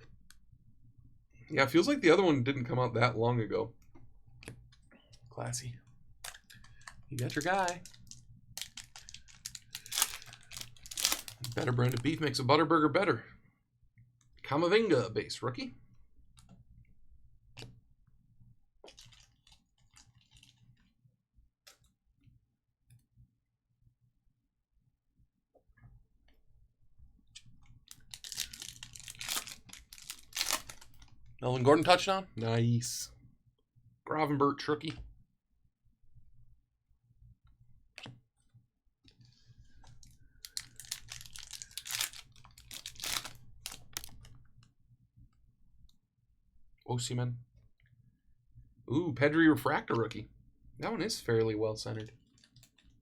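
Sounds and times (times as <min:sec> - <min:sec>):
plastic wrapper tearing and crinkling: 0:06.2 - 0:12.2, 0:18.9 - 0:20.7, 0:27.8 - 0:31.2, 0:40.0 - 0:44.3
trading cards being handled: 0:06.2 - 0:12.2, 0:27.4 - 0:31.2, 0:39.8 - 0:44.4.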